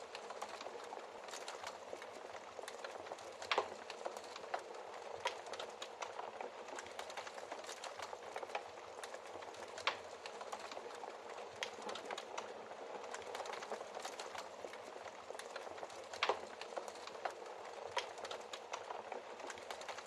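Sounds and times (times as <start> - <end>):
wood fire crackling: 0.0 - 20.0.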